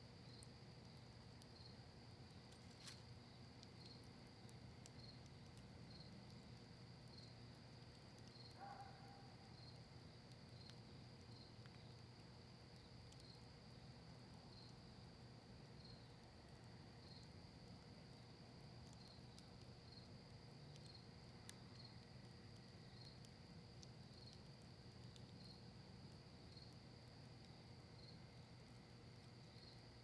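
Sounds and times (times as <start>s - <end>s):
campfire crackling and popping: 0.1s - 8.7s, 9.5s - 30.0s
cricket trill: 4.8s - 6.3s.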